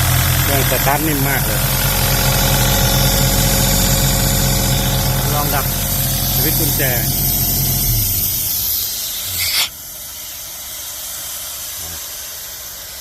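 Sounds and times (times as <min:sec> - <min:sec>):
diesel engine shutting off: 0:00.0 - 0:12.9
compressed air hissing out: 0:02.4 - 0:10.5.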